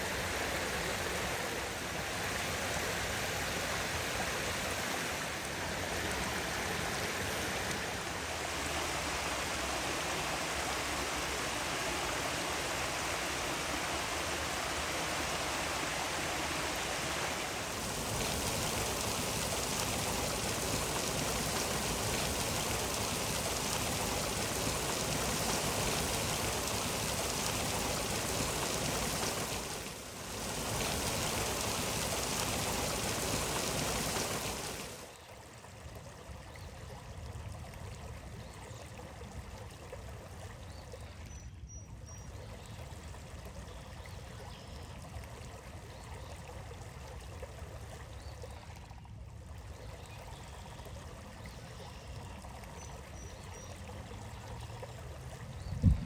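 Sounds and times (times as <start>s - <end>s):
stream water rushing: 0.0s - 35.2s.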